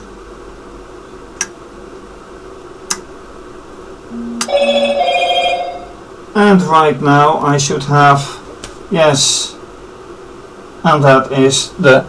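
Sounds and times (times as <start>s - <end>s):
electronic ringing tone: 4.1s - 6.1s.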